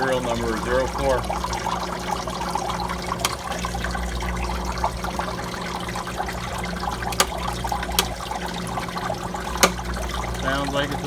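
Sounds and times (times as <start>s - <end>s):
low refrigeration hum: 0.0s - 11.0s
water trickling: 0.0s - 11.0s
sharp machine clicks: 3.0s - 3.8s, 7.0s - 8.2s.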